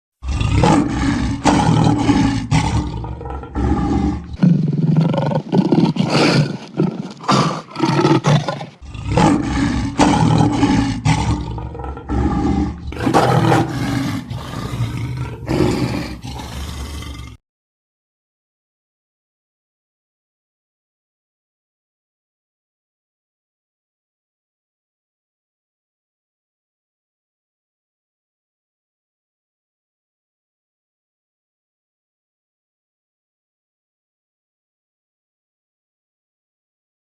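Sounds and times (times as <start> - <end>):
big cat roaring: 0.2 - 17.4.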